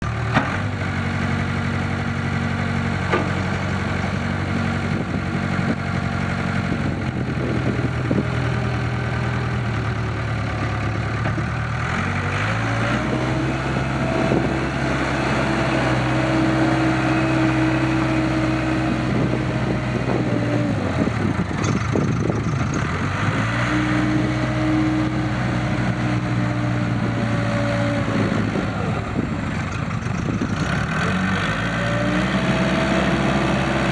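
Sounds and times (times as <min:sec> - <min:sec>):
diesel engine idling and revving: 0:00.0 - 0:33.9.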